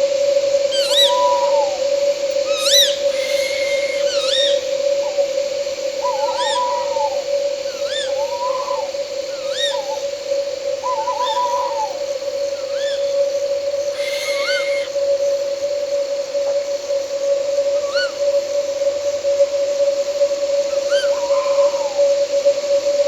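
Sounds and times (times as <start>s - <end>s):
night insects droning: 0.0s - 23.0s
owls calling: 0.7s - 15.1s, 17.8s - 18.2s, 20.7s - 22.0s.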